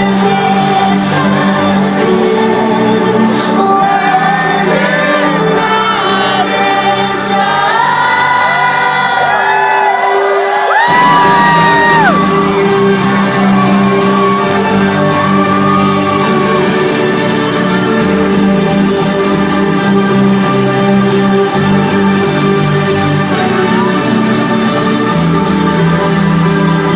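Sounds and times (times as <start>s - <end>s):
loud trance music: 0.0s - 26.9s
crowd shouting and whooping: 7.2s - 26.9s.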